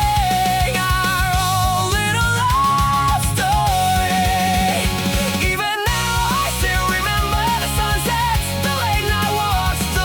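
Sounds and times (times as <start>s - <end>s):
lead guitar line with pitch bends: 0.0s - 6.9s
bass: 0.0s - 10.0s
drums: 0.0s - 10.0s.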